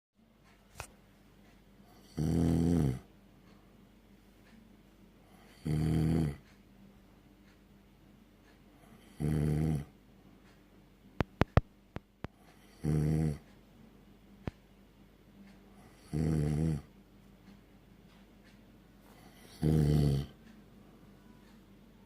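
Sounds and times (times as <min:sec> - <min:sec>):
person snoring: 0:02.0 - 0:03.1, 0:05.5 - 0:06.4, 0:09.0 - 0:09.9, 0:12.5 - 0:13.4, 0:15.8 - 0:16.9, 0:19.2 - 0:20.4.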